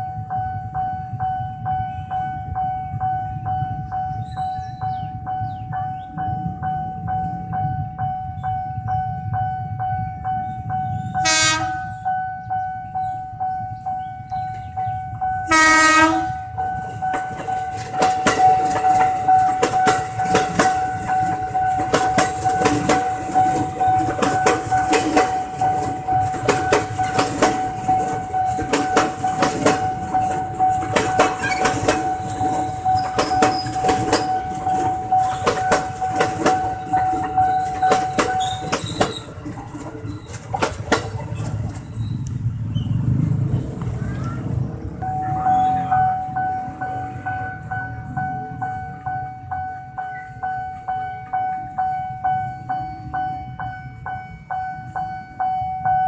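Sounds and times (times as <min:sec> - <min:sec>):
train horn blasts: 0:11.2 - 0:12.0, 0:15.4 - 0:16.6
train wheels clattering over rails: 0:16.6 - 0:49.6.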